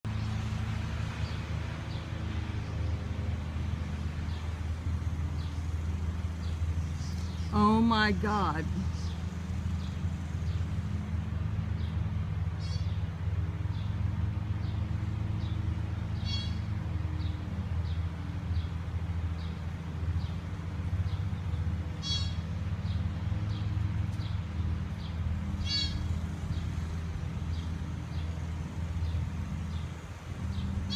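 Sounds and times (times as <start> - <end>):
fawn calling: 22.0 - 22.4, 25.6 - 26.0.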